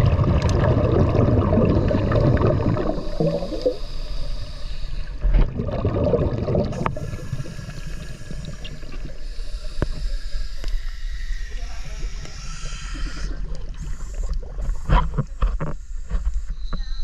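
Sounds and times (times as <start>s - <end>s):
water gurgling and bubbling: 0.0s - 4.4s, 5.0s - 10.1s.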